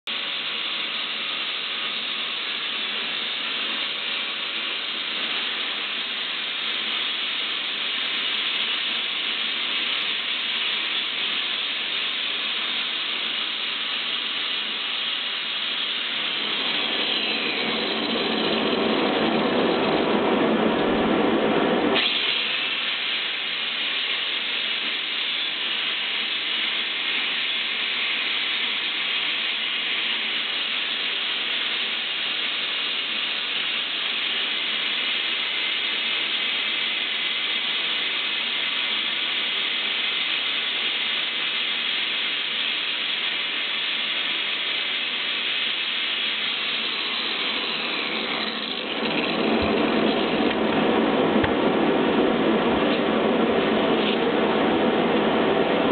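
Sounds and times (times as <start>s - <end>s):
stone being sanded: 16.2s - 19.0s, 46.4s - 50.4s.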